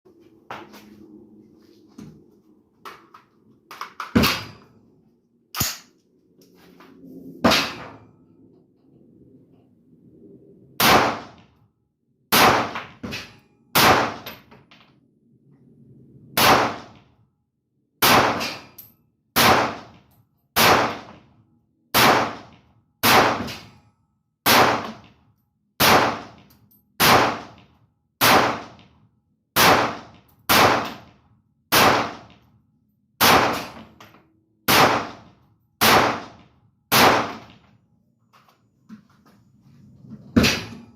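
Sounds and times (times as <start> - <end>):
rifle shots echoing: 12.3 - 12.8, 13.8 - 14.3, 19.4 - 19.9, 20.6 - 21.1, 22.0 - 23.6, 24.5 - 25.0, 25.8 - 26.4, 27.0 - 27.6, 28.2 - 28.8, 29.6 - 31.1, 31.7 - 32.3, 33.2 - 33.8, 34.7 - 37.6.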